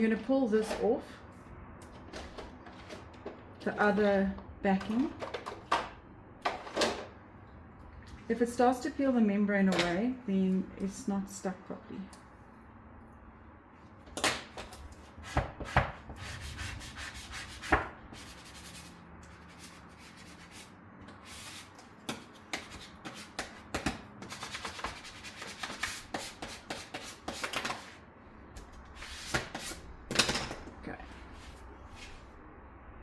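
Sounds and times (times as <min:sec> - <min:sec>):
scraping on adhesive film: 0:15.2 - 0:28.0.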